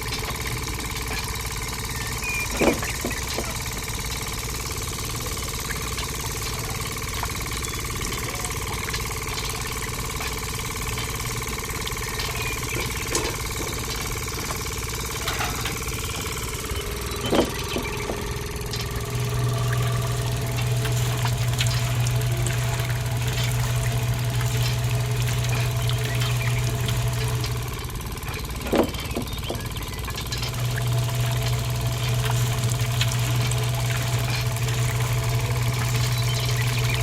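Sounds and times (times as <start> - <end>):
small model motors running: 0.0 - 37.0
deeper hum: 10.7 - 28.4, 29.1 - 37.0.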